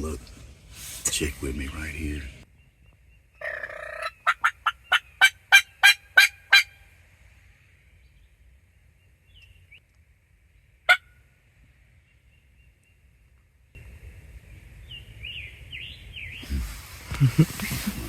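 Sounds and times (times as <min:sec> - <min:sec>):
outdoor hiss: 0:00.0 - 0:02.2, 0:16.4 - 0:18.0
distant turkey gobbling: 0:03.4 - 0:06.8.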